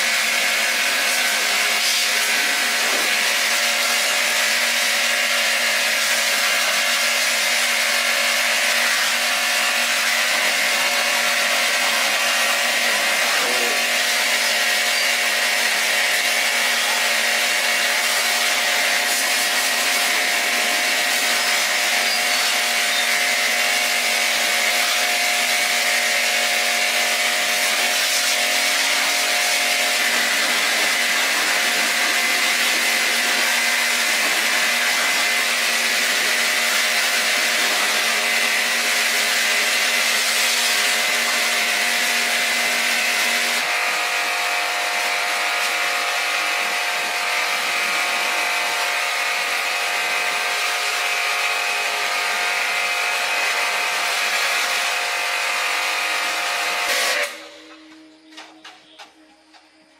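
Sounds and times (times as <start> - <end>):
power tool grinding: 0.0 - 59.8.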